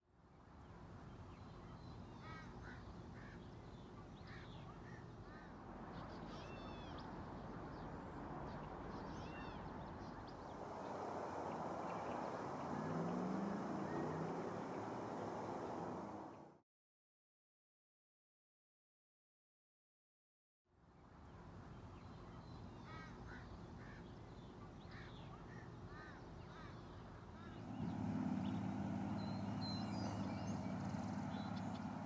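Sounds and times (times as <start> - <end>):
outdoor background hiss: 0.3 - 16.5, 20.9 - 32.0
birds calling: 7.8 - 16.5, 22.1 - 32.0.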